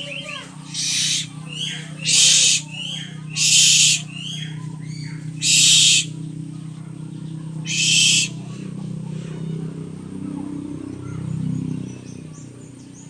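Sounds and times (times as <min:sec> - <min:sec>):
steady low hum: 0:00.0 - 0:13.0
owl screeching: 0:00.7 - 0:06.2, 0:07.6 - 0:08.5.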